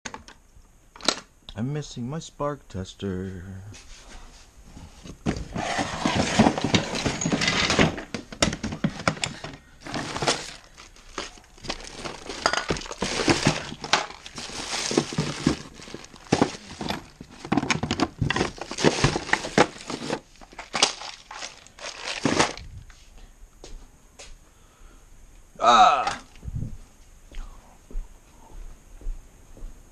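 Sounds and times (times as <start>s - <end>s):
tools clattering while rummaged: 5.2s - 22.6s.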